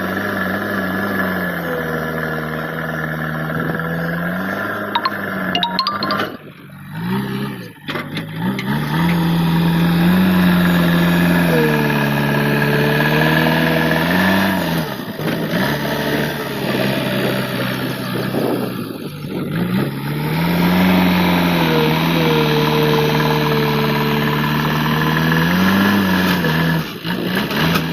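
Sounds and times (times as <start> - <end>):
diesel engine revving under load: 8.0 - 18.2.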